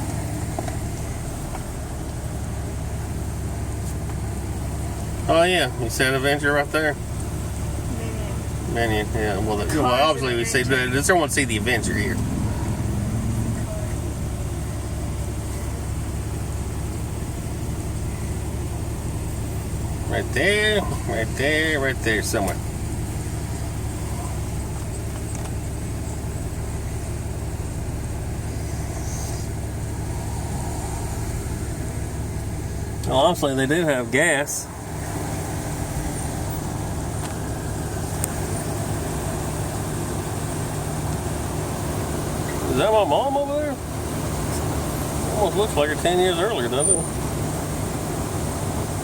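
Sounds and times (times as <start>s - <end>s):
car engine idling: 0.0s - 49.0s
even hiss: 28.5s - 32.2s.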